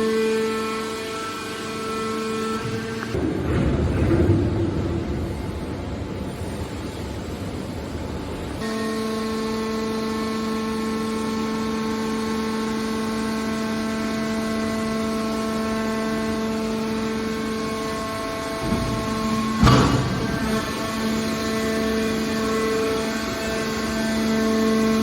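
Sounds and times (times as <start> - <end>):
machine noise: 0.0 - 25.0
hydraulic pump humming: 8.7 - 25.0.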